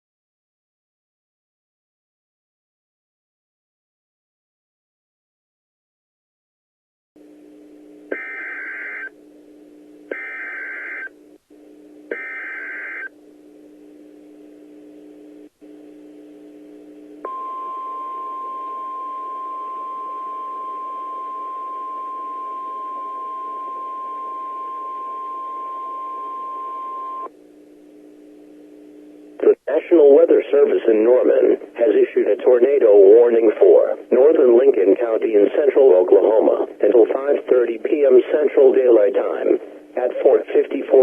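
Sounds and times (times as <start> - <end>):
low hum and hiss: 7.2 - 41.0
high warning alarm tone: 8.1 - 9.1, 10.1 - 11.1, 12.1 - 13.1, 17.2 - 27.3.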